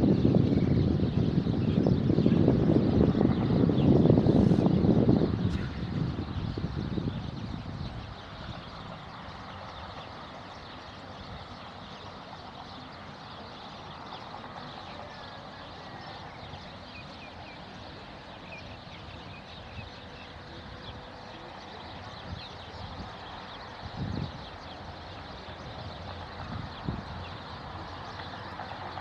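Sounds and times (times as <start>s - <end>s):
strong wind rushing: 0.0s - 9.7s, 22.0s - 25.0s, 25.6s - 28.0s
birds chirping and screeching: 3.0s - 11.0s.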